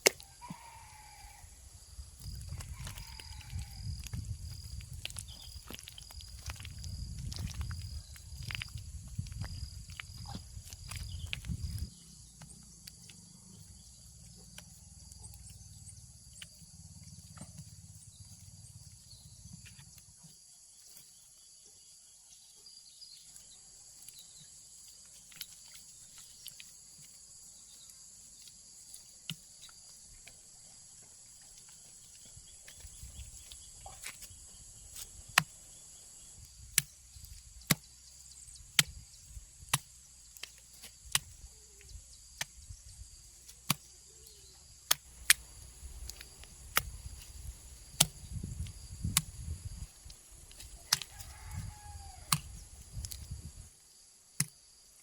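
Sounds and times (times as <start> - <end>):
insect shrilling: 0.0 - 8.8.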